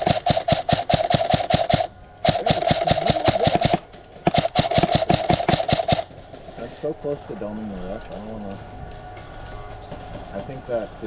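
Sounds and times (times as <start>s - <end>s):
airsoft gun firing full auto: 0.0s - 6.1s.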